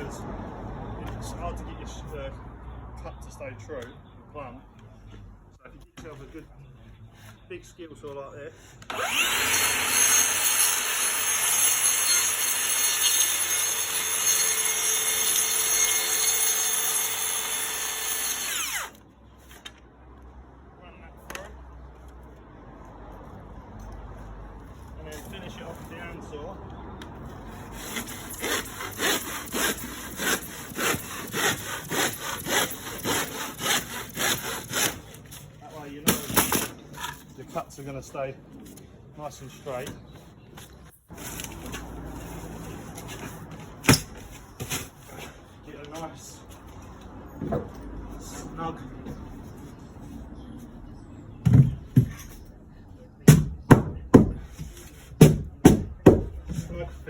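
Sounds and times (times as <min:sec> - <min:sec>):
handsaw cutting wood: 0:08.9 - 0:19.0, 0:27.6 - 0:35.2
hammer blows on timber: 0:53.3 - 0:56.6.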